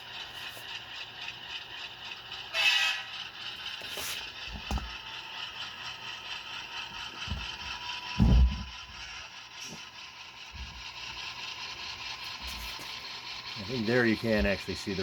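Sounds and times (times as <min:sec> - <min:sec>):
model train motor and gears: 0:00.0 - 0:15.0
tinny diesel locomotive sound: 0:00.0 - 0:15.0.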